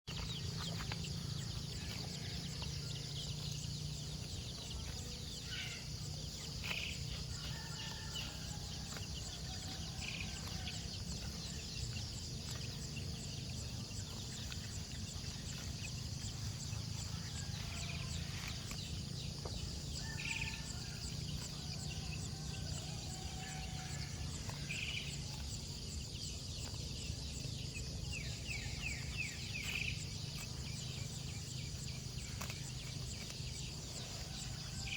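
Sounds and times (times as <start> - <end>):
low rumble: 0.1 - 23.3
bird or poultry calls: 0.1 - 34.9
insect chorus: 0.1 - 34.9.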